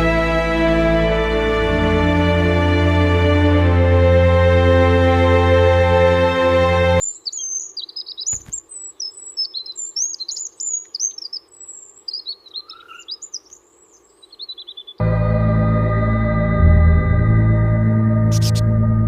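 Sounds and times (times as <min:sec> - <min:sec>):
organ-like music: 0:00.0 - 0:07.0, 0:15.0 - 0:19.0
songbird singing: 0:07.0 - 0:15.0, 0:18.3 - 0:18.7.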